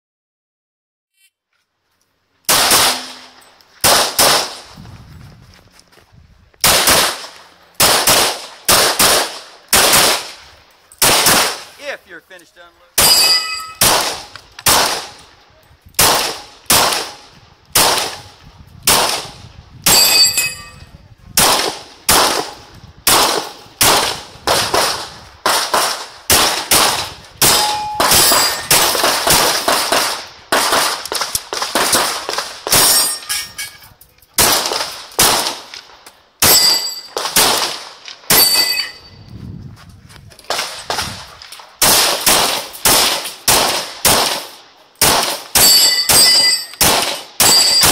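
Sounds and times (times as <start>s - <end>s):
rapid pistol fire: 2.5s - 4.7s, 6.6s - 10.4s, 11.0s - 11.8s, 13.8s - 15.2s, 16.0s - 18.3s, 18.9s - 20.1s, 21.4s - 32.9s, 34.4s - 35.7s, 36.4s - 38.5s, 41.8s - 47.9s
steel targets clanging: 2.7s - 3.6s, 13.0s - 13.8s, 19.9s - 20.9s, 27.4s - 29.0s, 32.7s - 34.0s, 36.4s - 37.2s, 38.3s - 39.2s, 45.6s - 46.8s, 47.4s - 47.9s.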